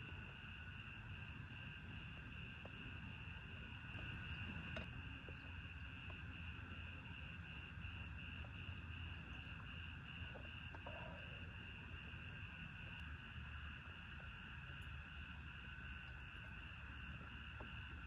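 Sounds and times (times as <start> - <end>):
insect trill: 0.0 - 18.0
faint ticks: 1.7 - 11.7, 14.7 - 18.0.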